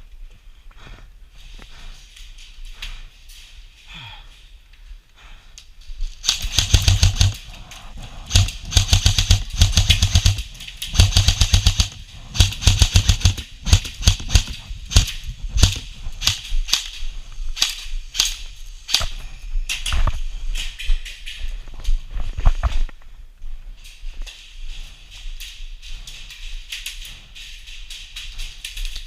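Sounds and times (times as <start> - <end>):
airsoft guns firing: 6.2 - 16.9.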